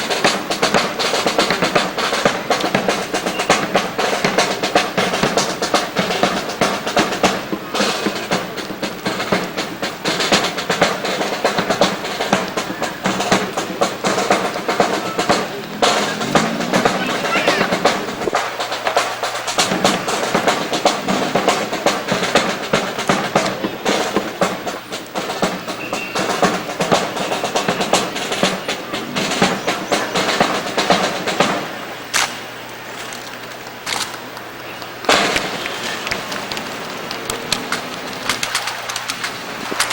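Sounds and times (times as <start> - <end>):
bass drum beats: 0.0 - 18.6
snare drum rolls: 0.0 - 32.5, 34.9 - 39.9
loud crack: 35.0 - 39.9.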